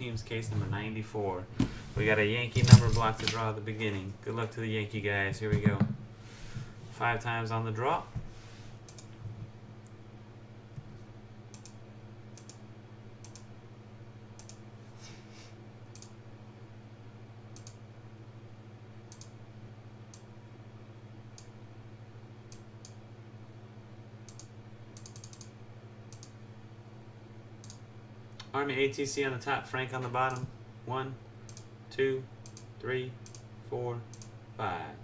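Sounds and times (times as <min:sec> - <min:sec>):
low electrical hum: 0:00.0 - 0:35.0
computer mouse clicks: 0:08.9 - 0:09.2, 0:11.5 - 0:11.8, 0:12.4 - 0:12.6, 0:13.2 - 0:13.5, 0:14.4 - 0:14.6, 0:15.9 - 0:16.1, 0:17.6 - 0:17.8, 0:19.1 - 0:19.4, 0:24.3 - 0:25.5, 0:26.1 - 0:26.4, 0:27.6 - 0:27.8, 0:31.5 - 0:31.7, 0:32.4 - 0:33.4, 0:34.1 - 0:34.3.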